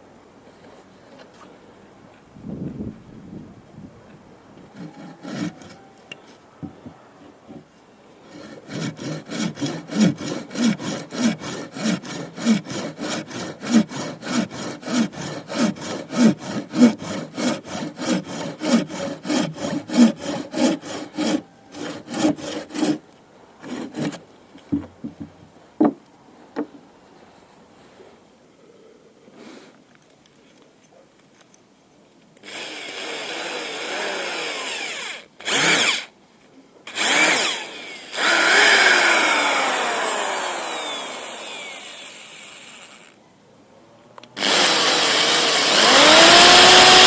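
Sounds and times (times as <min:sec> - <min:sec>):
hand tool strokes squeaking: 0:04.7 - 0:06.0, 0:08.3 - 0:23.0.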